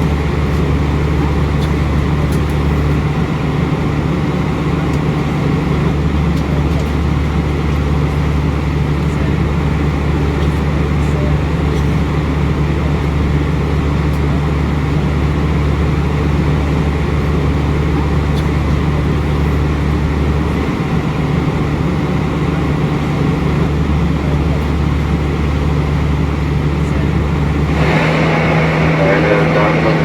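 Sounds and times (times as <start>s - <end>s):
low engine drone: 0.0s - 30.0s
rush of air: 27.7s - 30.0s.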